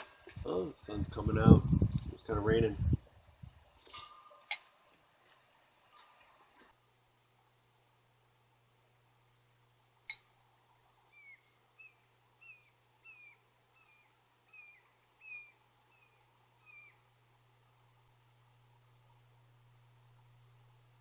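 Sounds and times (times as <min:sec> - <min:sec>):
animal calling: 0:11.1 - 0:17.1.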